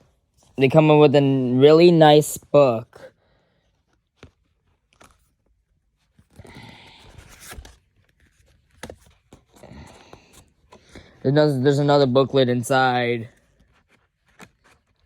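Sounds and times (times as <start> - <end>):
paper and cardboard rustling: 3.1 - 11.4, 13.2 - 15.0.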